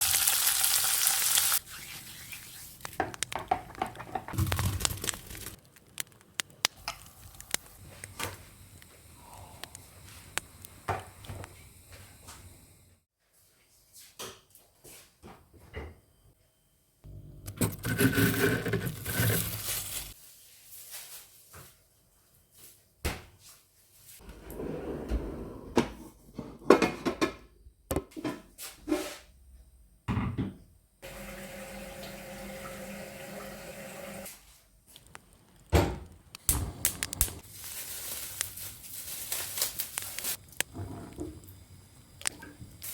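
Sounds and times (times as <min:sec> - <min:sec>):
food sizzling in a pan: 0:00.0 - 0:02.2
kitchen clicks and clatter: 0:03.0 - 0:05.1.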